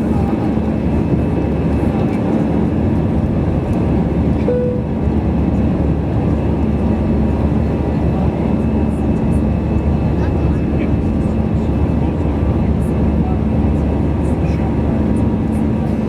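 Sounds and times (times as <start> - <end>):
jet engine drone: 0.0 - 16.0
short tone: 4.4 - 5.0.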